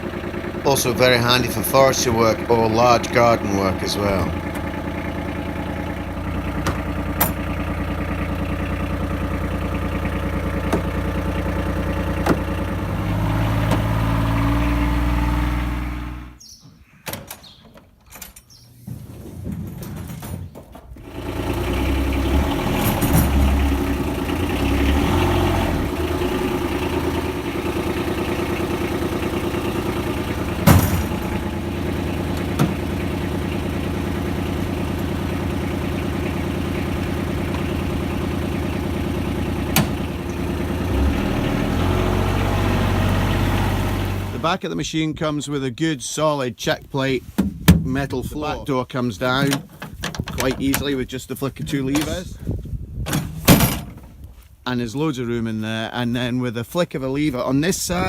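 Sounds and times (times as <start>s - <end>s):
diesel engine running: 0.0s - 16.4s, 20.9s - 44.7s.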